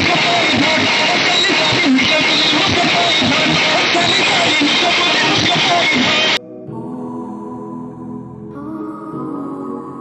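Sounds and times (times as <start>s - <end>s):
scattered voices: 0.0s - 6.4s
steady rushing noise: 0.0s - 6.4s.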